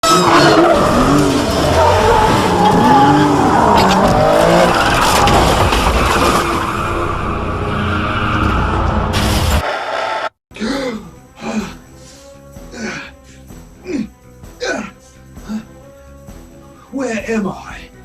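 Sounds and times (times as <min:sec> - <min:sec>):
tyres squealing: 0:00.0 - 0:07.2
vehicle engines revving: 0:00.0 - 0:10.3.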